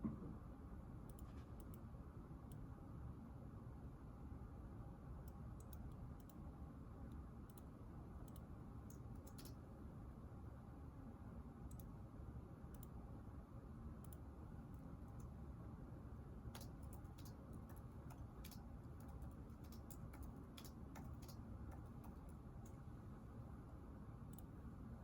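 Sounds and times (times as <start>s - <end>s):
low room hum: 0.0s - 25.0s.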